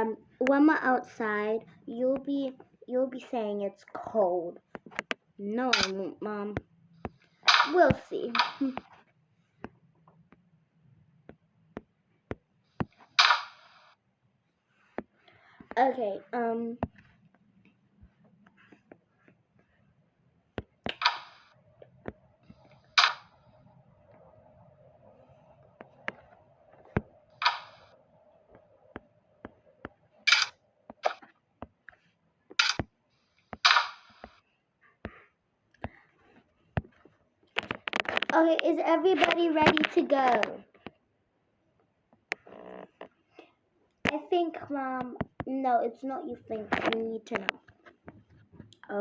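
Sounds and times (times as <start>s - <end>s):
sharp clicks and knocks: 4.6s - 9.0s, 11.3s - 13.9s, 20.6s - 24.3s, 25.8s - 32.9s, 33.5s - 34.4s, 36.8s - 41.0s.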